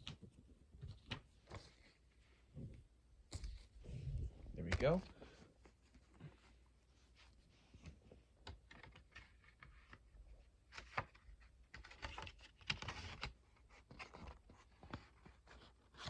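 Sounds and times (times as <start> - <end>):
paper rustles: 4.7 - 16.0.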